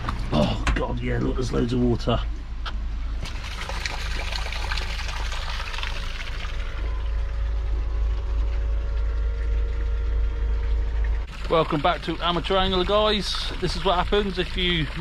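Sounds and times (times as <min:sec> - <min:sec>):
electric pump humming: 0:02.4 - 0:15.0
water splashing and pouring: 0:03.2 - 0:15.0.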